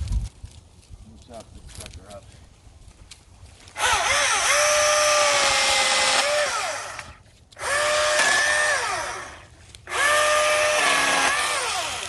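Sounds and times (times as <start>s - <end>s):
battery chainsaw whine: 3.7s - 12.0s.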